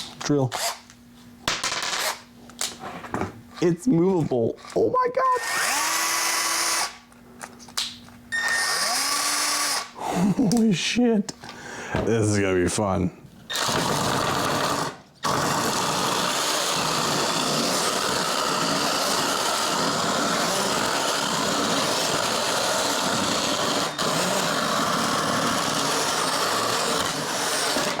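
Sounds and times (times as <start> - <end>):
drill chainsaw whirring: 4.6 - 7.0, 8.4 - 10.0, 13.5 - 28.0.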